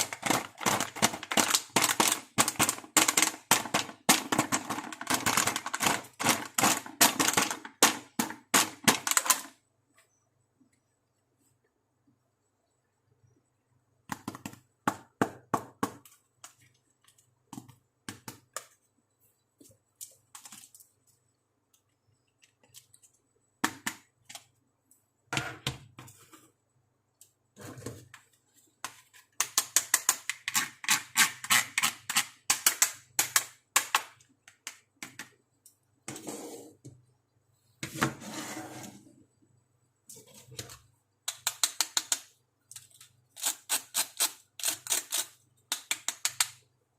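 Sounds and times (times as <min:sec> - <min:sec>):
plastic toy pieces clicking: 0:29.4 - 0:35.2, 0:41.3 - 0:46.6
rustling scrapes: 0:38.0 - 0:39.2.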